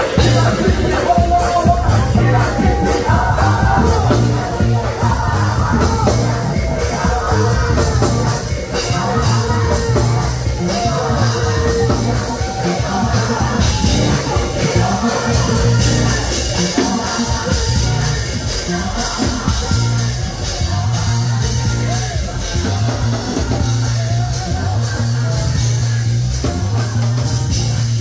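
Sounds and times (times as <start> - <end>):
drum beat: 0.0 - 28.0
gospel choir singing: 0.0 - 28.0
heavy bass: 0.0 - 28.0
live band playing: 0.0 - 28.0.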